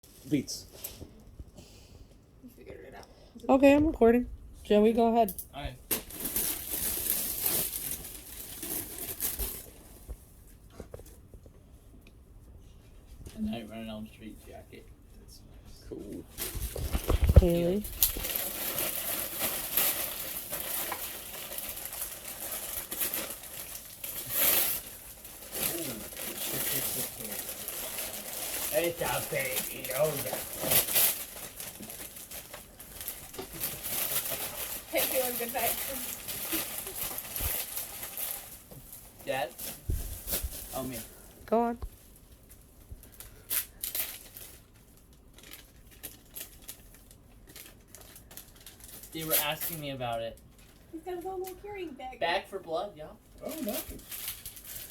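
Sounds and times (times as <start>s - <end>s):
gift wrapping crinkling and tearing: 5.9s - 10.0s, 16.3s - 51.7s, 53.4s - 54.9s.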